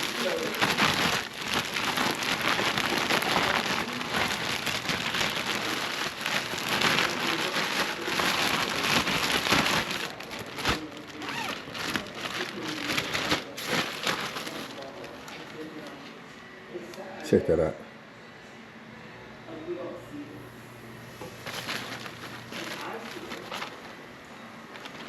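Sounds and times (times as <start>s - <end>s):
plastic bag rattling crinkle: 0.0s - 16.0s, 21.4s - 25.0s.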